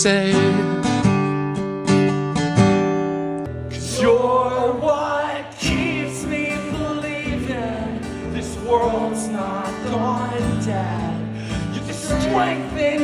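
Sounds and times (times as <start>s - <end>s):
guitar: 0.0s - 13.0s
person singing: 3.7s - 13.0s.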